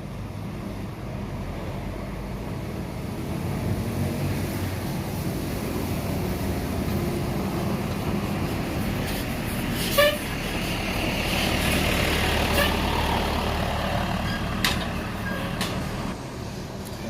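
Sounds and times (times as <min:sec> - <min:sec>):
bus engine passing: 0:00.0 - 0:17.0
bus horn toots: 0:09.8 - 0:10.3, 0:12.4 - 0:13.0, 0:15.2 - 0:15.8.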